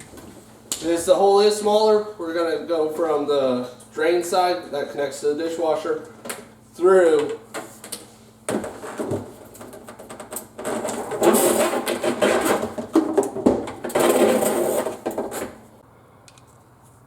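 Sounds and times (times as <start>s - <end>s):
plastic hose rattling and scraping: 8.5s - 15.6s.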